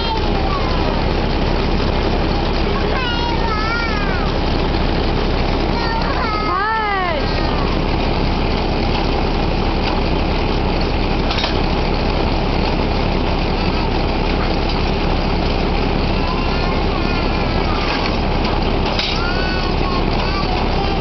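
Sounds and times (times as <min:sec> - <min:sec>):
drilling rig engine noise: 0:00.0 - 0:21.0
metal clank: 0:11.2 - 0:11.6, 0:18.8 - 0:19.3.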